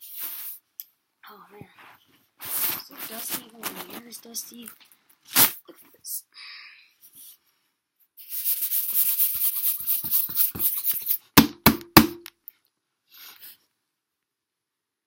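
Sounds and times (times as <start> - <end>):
sharp knocks: 11.4 - 12.3.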